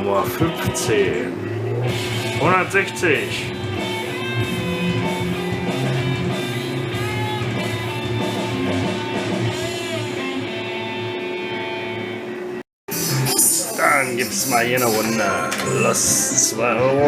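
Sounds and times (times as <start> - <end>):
slot machine game music: 12.9 - 16.7.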